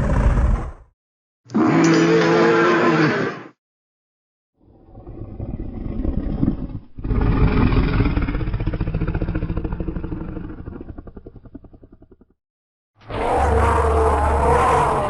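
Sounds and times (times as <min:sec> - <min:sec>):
dinosaur growling bellow: 0:00.0 - 0:00.8, 0:01.5 - 0:03.5, 0:04.7 - 0:12.2, 0:13.0 - 0:15.0.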